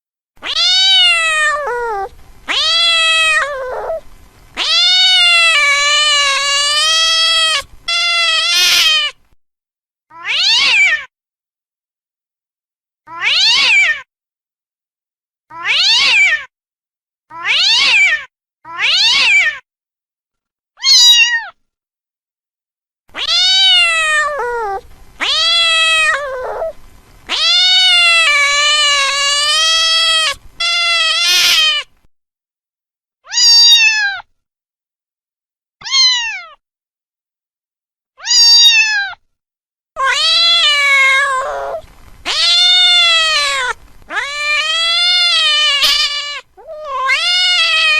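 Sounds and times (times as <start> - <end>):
cat meowing: 0.4 - 9.2, 10.1 - 11.1, 13.1 - 14.1, 15.5 - 16.5, 17.3 - 19.6, 20.8 - 21.5, 23.2 - 31.9, 33.3 - 34.2, 35.8 - 36.6, 38.2 - 39.2, 40.0 - 47.9.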